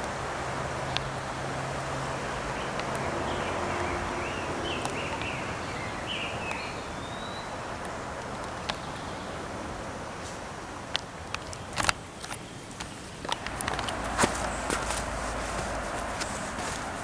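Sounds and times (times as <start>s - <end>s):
outdoor background noise: 0.0s - 17.0s
bird chirping: 2.0s - 9.5s, 12.4s - 17.0s.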